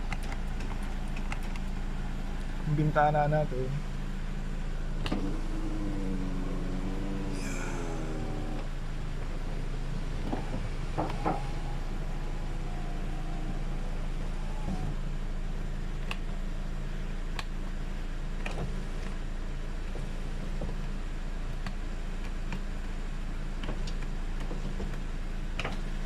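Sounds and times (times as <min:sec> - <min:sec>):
low hum: 0:00.0 - 0:19.6
power window motor running: 0:01.7 - 0:19.3.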